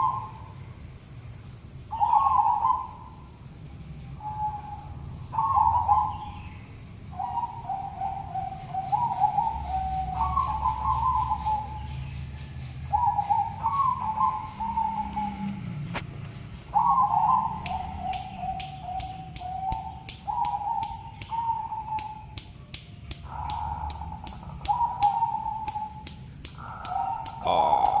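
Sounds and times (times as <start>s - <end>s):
dove cooing: 1.9s - 3.1s, 4.2s - 6.3s, 7.2s - 11.8s, 12.9s - 15.9s, 16.7s - 22.3s, 23.2s - 28.0s
sharp clicks: 17.6s - 28.0s.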